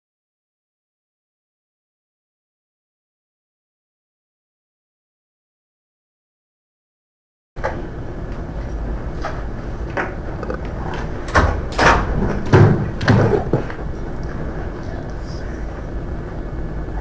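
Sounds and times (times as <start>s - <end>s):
low room hum: 7.6s - 17.0s
knocks and thuds: 11.3s - 13.7s.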